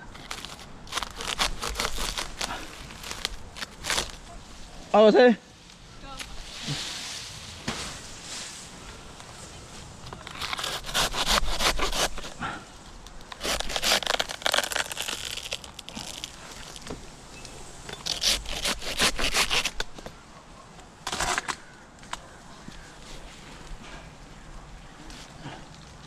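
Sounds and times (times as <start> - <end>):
dry palm fronds crackling and tearing: 0.0 - 4.8, 5.6 - 17.1, 18.0 - 20.1.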